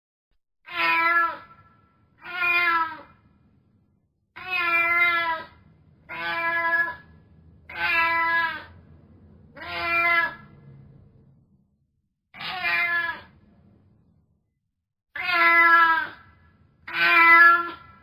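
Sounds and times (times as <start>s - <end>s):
cat meowing: 0.6s - 3.2s, 4.4s - 7.1s, 7.7s - 8.8s, 9.5s - 10.5s, 12.4s - 13.4s, 15.2s - 18.0s.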